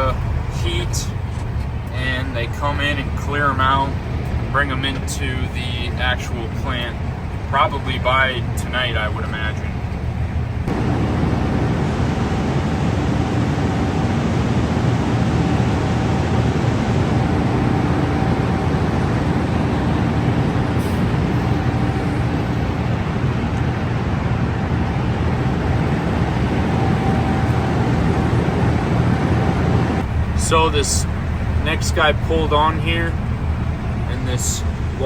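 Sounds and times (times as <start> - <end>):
truck and machinery droning: 0.0 - 35.0
faint steady hum: 29.9 - 35.0.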